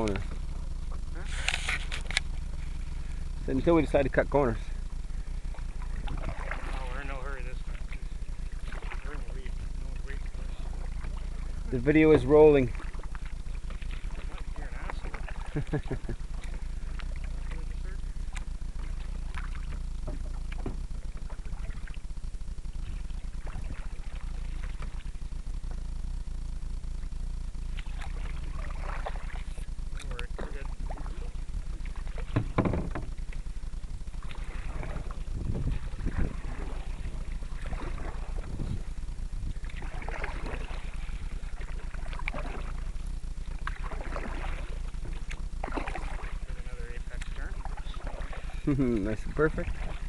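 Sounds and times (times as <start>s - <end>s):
low rumble: 0.0s - 50.0s
paddle splashing in water: 5.2s - 22.1s, 22.8s - 25.2s, 27.7s - 50.0s
wind rumble on microphone: 27.0s - 50.0s.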